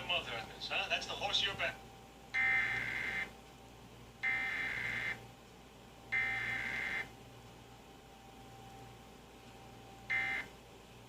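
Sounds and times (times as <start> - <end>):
buzzy warbling data bursts: 2.4 - 3.3, 4.2 - 5.2.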